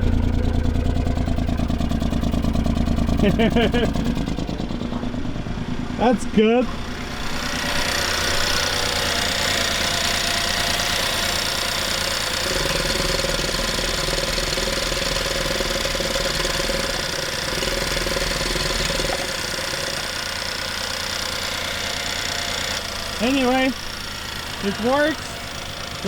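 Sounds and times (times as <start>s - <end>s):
car engine low rumble: 0.0s - 26.0s
person speaking: 6.0s - 6.8s, 23.2s - 23.8s, 24.6s - 25.4s.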